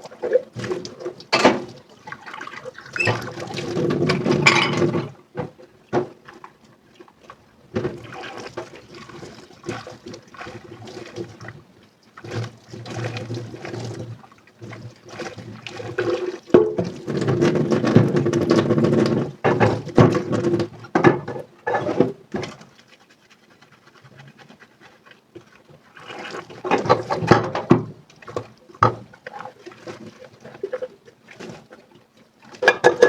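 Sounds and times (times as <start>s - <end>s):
water running and splashing: 0.0s - 4.7s, 6.2s - 33.0s
dishes clinking: 4.4s - 5.0s.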